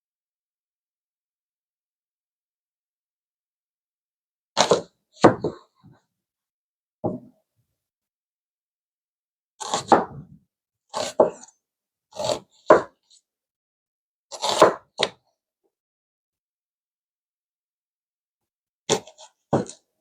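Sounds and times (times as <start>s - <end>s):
knife chopping onion on board: 9.6s - 11.5s, 12.2s - 13.0s, 14.3s - 15.2s, 18.9s - 19.8s.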